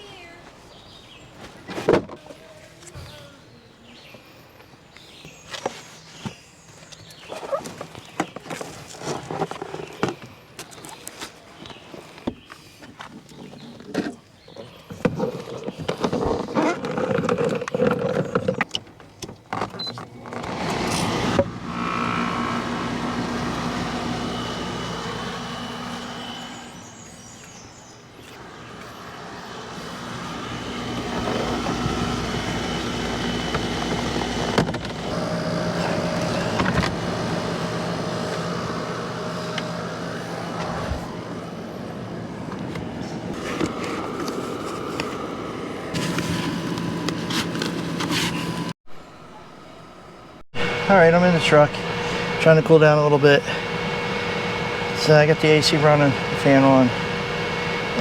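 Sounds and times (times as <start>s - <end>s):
steady mechanical hum: 18.3s - 58.0s.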